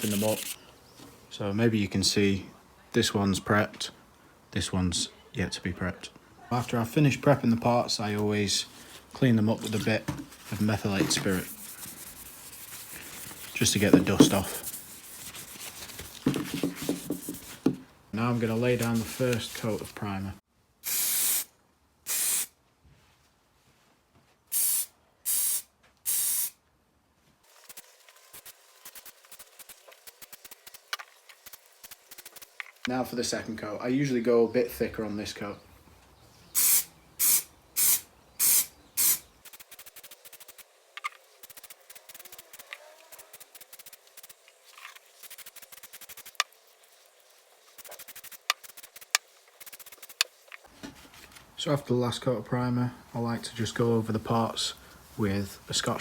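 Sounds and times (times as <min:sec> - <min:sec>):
spray can hissing: 0:00.0 - 0:00.6, 0:10.6 - 0:17.8, 0:20.8 - 0:21.5, 0:22.1 - 0:22.5, 0:24.5 - 0:26.6, 0:27.5 - 0:32.8, 0:36.6 - 0:50.5.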